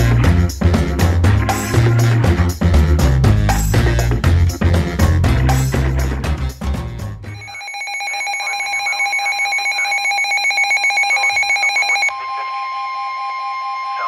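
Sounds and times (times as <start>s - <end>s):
music: 0.0s - 7.5s
two-tone alert signal: 7.3s - 13.0s.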